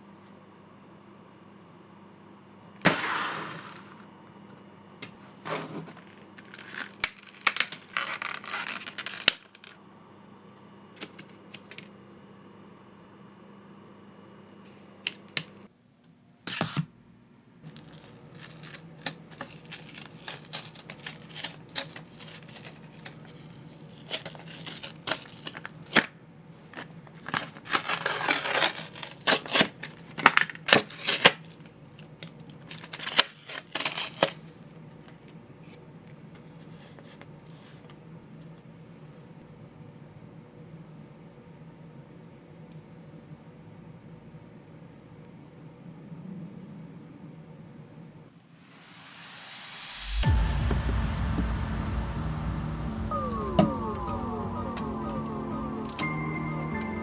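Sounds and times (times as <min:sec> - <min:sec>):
packaging rustling: 0:05.5 - 0:09.8, 0:17.7 - 0:26.1, 0:26.8 - 0:34.5.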